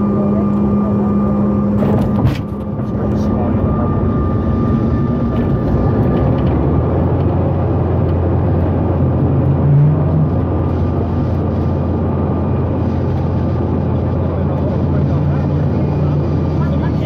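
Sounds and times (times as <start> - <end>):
brief low hum: 0.0 - 7.7
jet cabin engine rumble: 0.0 - 17.0.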